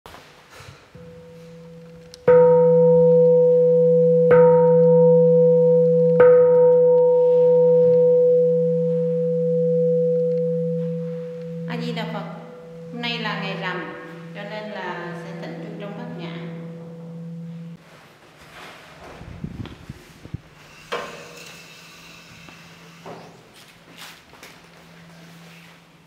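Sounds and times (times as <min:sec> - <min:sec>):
large temple bell ringing: 0:01.0 - 0:17.8.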